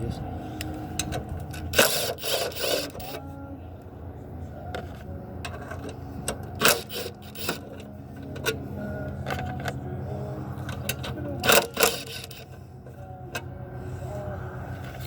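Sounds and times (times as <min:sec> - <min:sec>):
low hum: 0:00.0 - 0:15.0
metallic clicks of tools: 0:00.6 - 0:03.2, 0:05.4 - 0:08.6, 0:10.6 - 0:12.6.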